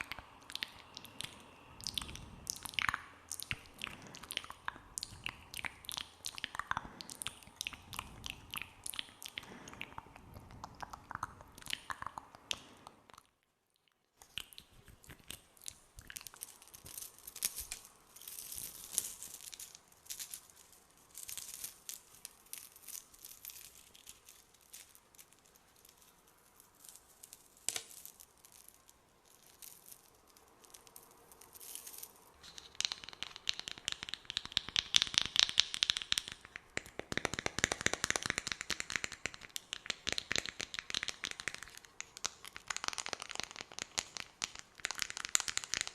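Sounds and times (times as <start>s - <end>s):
soft sticky clicks and crackles: 0.0s - 45.9s.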